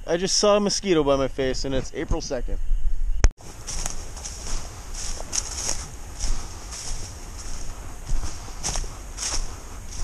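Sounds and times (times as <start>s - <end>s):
footsteps crunching through dry brush: 3.4s - 10.0s.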